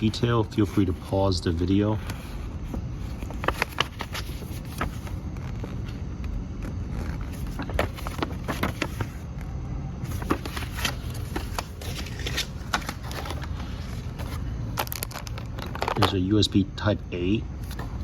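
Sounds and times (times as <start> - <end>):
box handling clicks and rustles: 10.1 - 16.2.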